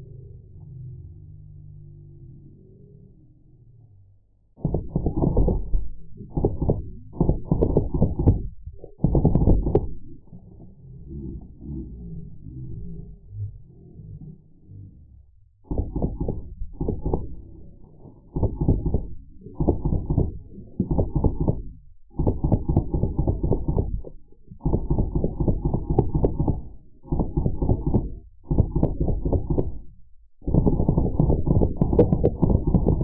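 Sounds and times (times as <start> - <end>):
machine guns firing bursts: 24.6 - 29.8.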